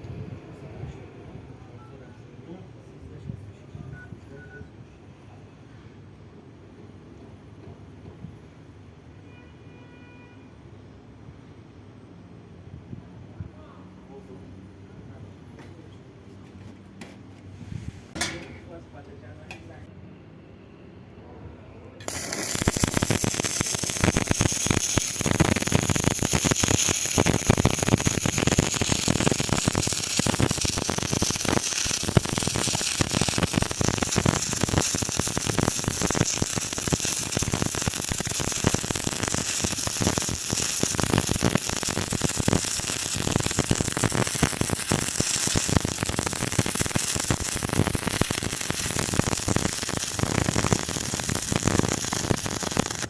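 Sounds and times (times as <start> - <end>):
welding arc crackling: 22.0 - 53.0.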